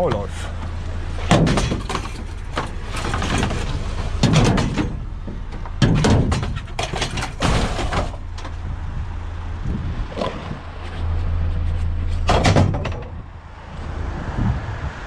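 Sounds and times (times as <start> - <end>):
vehicle engine humming: 0.0 - 15.0
clattering and knocking: 0.6 - 8.6, 12.1 - 13.3.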